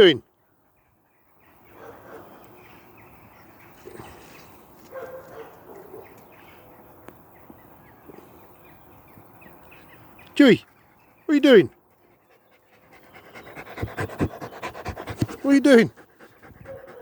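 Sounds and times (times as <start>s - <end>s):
dog making soft short noises: 13.0s - 17.0s.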